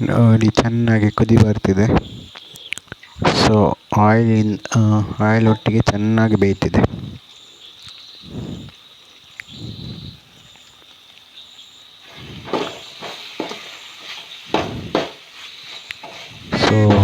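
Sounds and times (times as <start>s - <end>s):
high hiss: 0.0s - 17.0s
sharp knocks: 14.5s - 15.2s.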